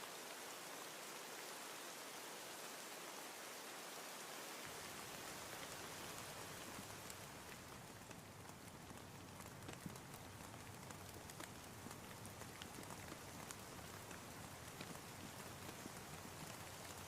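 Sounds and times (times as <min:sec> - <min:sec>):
rain falling: 0:00.0 - 0:17.0
raindrop taps: 0:06.7 - 0:17.0.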